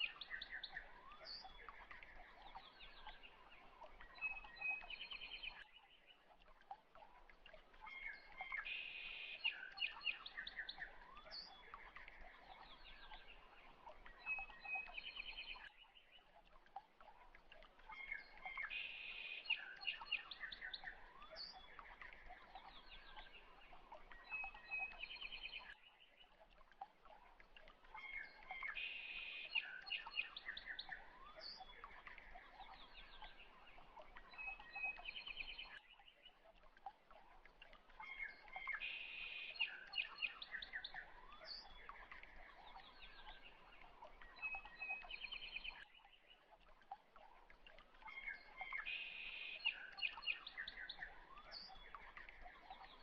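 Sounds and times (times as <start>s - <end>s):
birds chirping and trilling: 17.4s - 26.4s, 27.4s - 36.5s, 37.1s - 46.5s, 47.1s - 53.0s.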